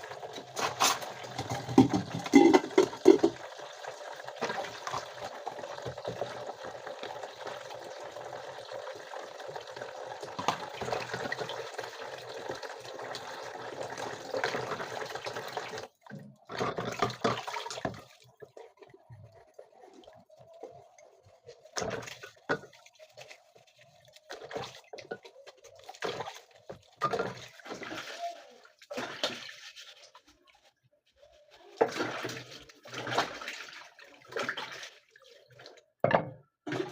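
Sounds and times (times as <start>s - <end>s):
tap water running into sink: 0.0s - 28.2s
short splashes and knocks: 0.6s - 3.4s, 16.0s - 18.5s.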